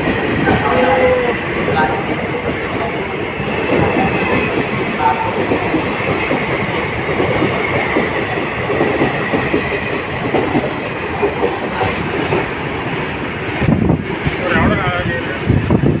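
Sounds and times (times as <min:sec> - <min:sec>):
train wheels clattering over rail joints: 0:00.0 - 0:15.9.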